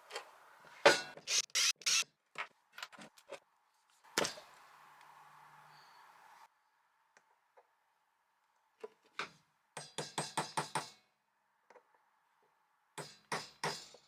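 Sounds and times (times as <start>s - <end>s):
tool parts clicking and scraping: 0.9s - 2.0s.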